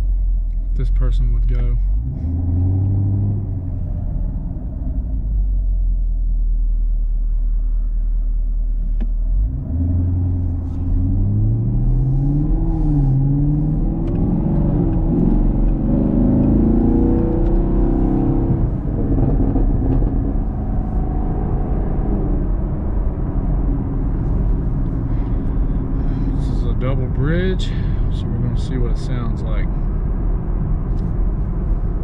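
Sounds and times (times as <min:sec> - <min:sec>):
car engine revving through gears: 0:01.9 - 0:05.2, 0:09.3 - 0:29.3
exhaust cracks: 0:10.0 - 0:32.0.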